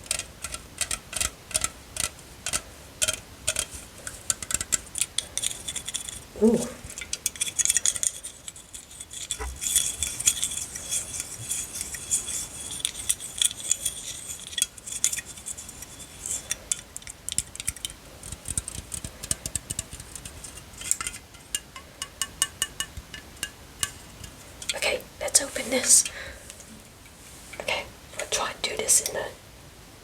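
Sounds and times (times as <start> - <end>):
metallic taps on a can: 0.0 - 5.5, 16.6 - 24.7
scratchy rustling: 1.2 - 16.8, 23.8 - 26.1.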